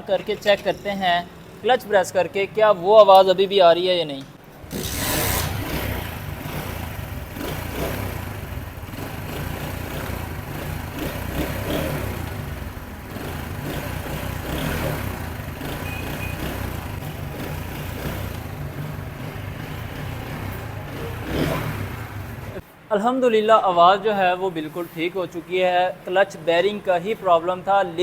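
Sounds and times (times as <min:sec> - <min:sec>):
motorcycle engine running: 0:04.4 - 0:22.6.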